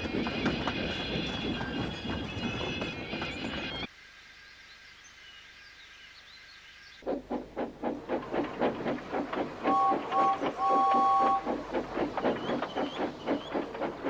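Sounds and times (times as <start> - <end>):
steam locomotive chuffing: 7.0 - 14.0.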